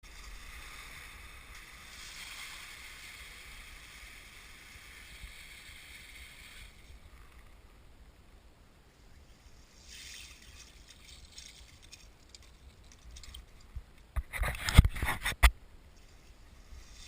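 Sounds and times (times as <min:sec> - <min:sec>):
thin ice tinkling and crackling: 0:09.7 - 0:13.8.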